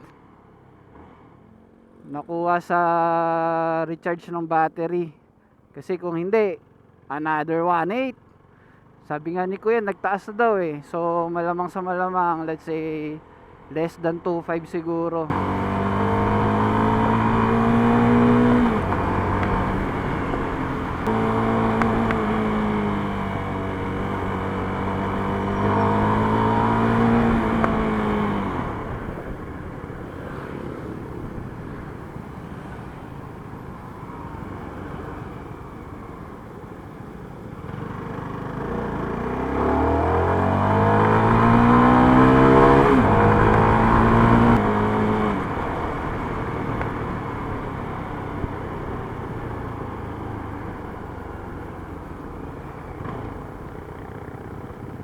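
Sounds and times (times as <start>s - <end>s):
road and wind noise: 0.0s - 55.0s
motorcycle engine and exhaust: 7.9s - 10.0s, 15.2s - 55.0s.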